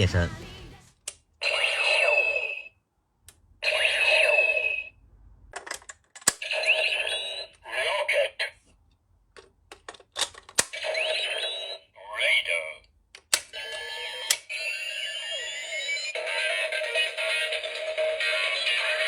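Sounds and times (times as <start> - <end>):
toy electronic beeping jingles: 1.4 - 2.7, 3.7 - 4.9, 6.4 - 8.0, 10.8 - 11.9, 13.6 - 19.0
toy switch clicks: 13.2 - 14.5.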